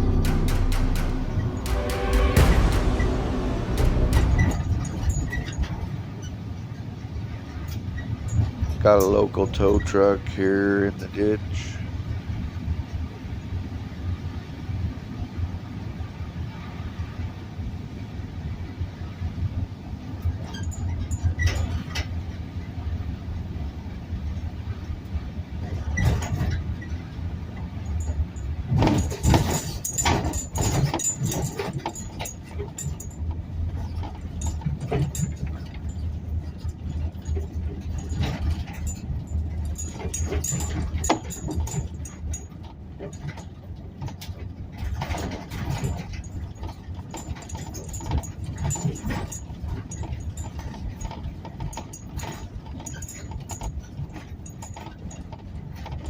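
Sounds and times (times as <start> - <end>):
vehicle engine running: 0.0 - 6.1.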